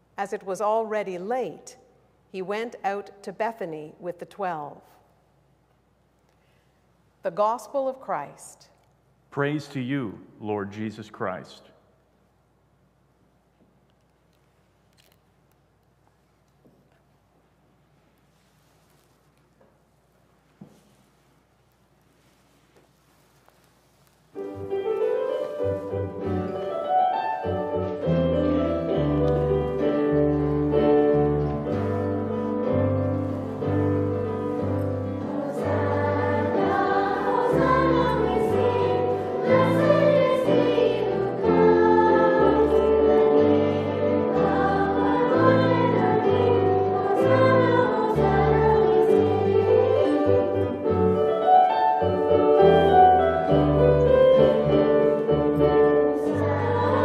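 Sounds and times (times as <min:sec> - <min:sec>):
keyboard accompaniment: 0:24.4 - 0:57.0
choir singing: 0:25.7 - 0:57.0.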